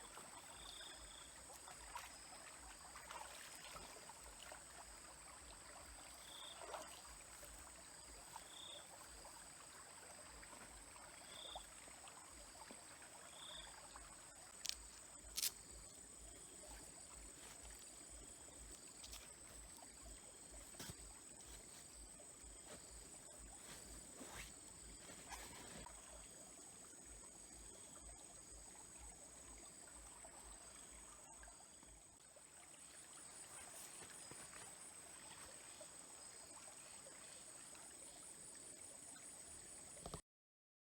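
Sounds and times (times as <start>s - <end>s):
stream trickling: 0.0s - 40.2s
high insect trill: 13.3s - 25.8s.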